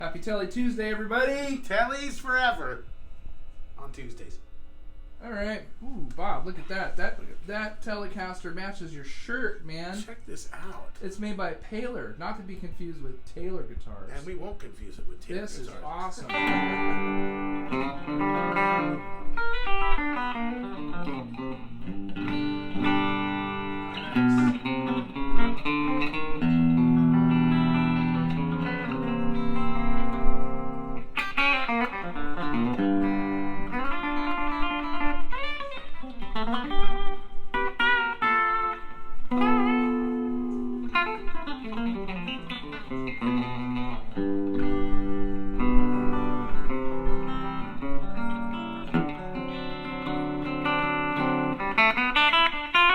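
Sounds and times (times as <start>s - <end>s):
electric guitar playing: 15.6s - 52.9s.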